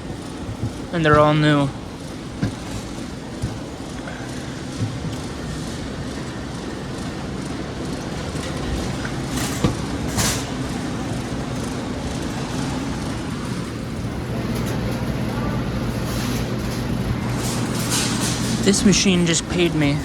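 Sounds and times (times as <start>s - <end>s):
low background hum: 0.0s - 20.0s
short clattering: 13.5s - 18.8s.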